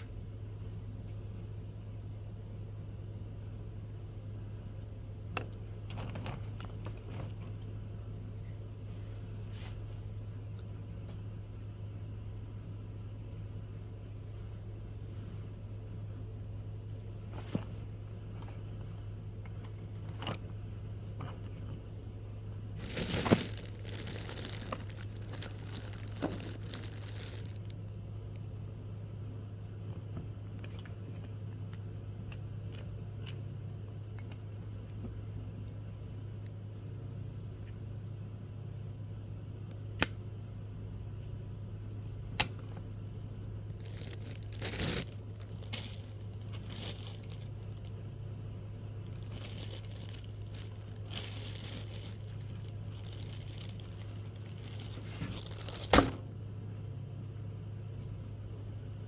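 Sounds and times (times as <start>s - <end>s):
steady low hum: 0.0s - 59.0s
crinkling: 16.9s - 28.6s, 43.7s - 56.2s.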